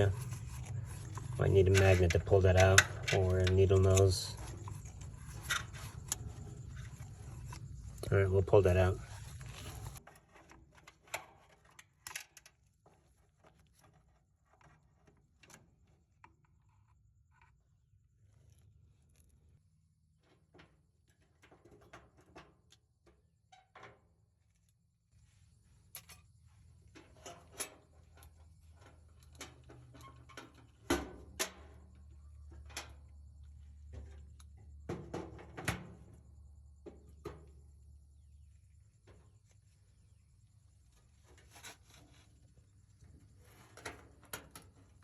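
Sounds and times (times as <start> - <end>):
metal clicks and scrapes: 0.0 - 16.8.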